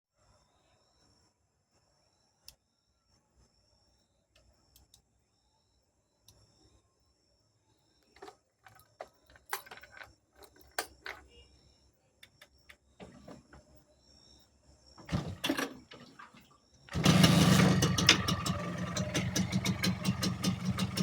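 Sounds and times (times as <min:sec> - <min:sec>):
motorcycle engine cranking: 0:15.0 - 0:16.3, 0:16.9 - 0:21.0
motorcycle engine idling: 0:16.9 - 0:21.0.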